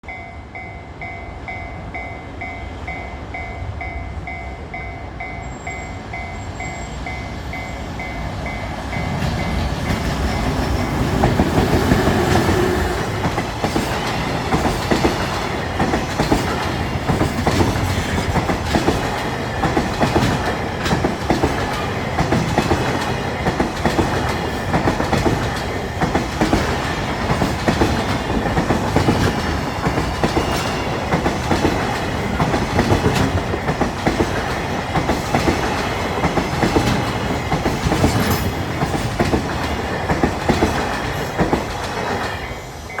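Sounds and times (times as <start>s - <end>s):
level-crossing alarm bell dinging: 0.0s - 11.4s
train wheels clattering over rail joints: 8.9s - 42.6s.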